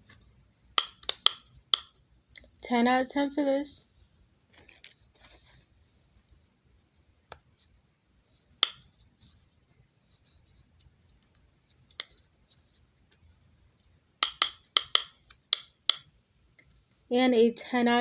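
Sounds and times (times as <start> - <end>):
fidget toys clicking and tapping: 0.1 - 2.6, 14.2 - 16.8.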